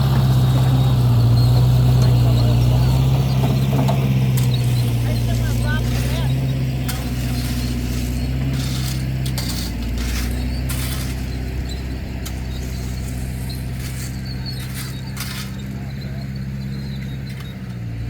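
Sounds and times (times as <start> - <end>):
machine engine running: 0.0 - 18.0
clicks and scrapes: 5.8 - 15.9.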